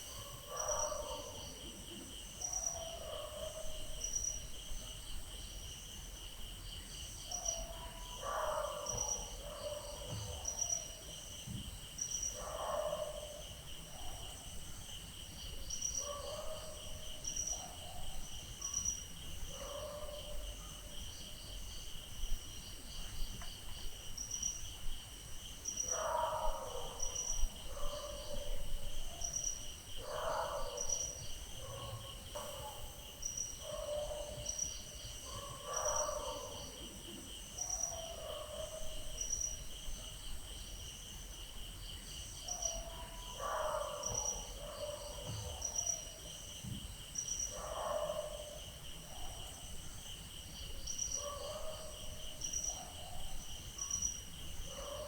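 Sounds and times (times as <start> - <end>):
crickets chirping: 0.0 - 55.0
dogs barking and yowling: 33.6 - 34.6, 35.2 - 36.8, 42.5 - 46.2, 47.5 - 49.6, 54.6 - 55.0.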